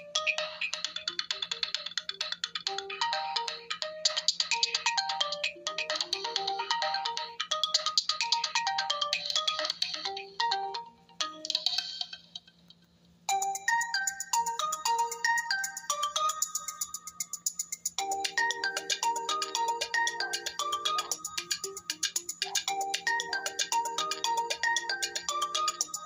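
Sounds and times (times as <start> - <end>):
electronic phone ringtone: 2.7 - 11.5, 13.3 - 17.2, 18.0 - 26.0
bright phone ringtone: 2.7 - 11.7, 13.3 - 17.2, 18.0 - 26.0.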